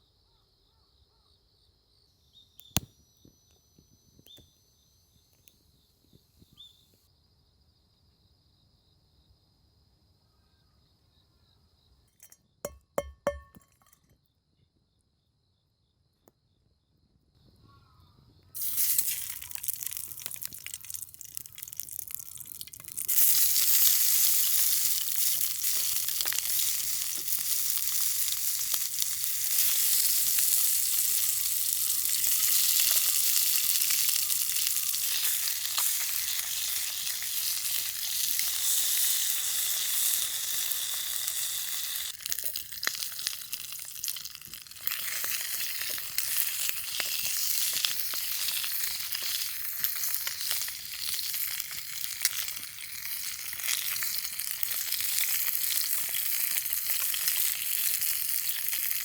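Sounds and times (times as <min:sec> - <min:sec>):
food sizzling in a hot pan: 0:18.6 - 0:59.0.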